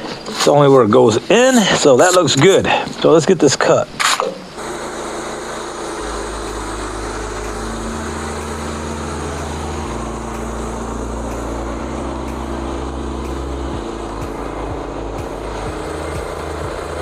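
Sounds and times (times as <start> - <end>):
band saw blade cutting log: 4.0 - 17.0
small gasoline engine under load: 4.0 - 17.0.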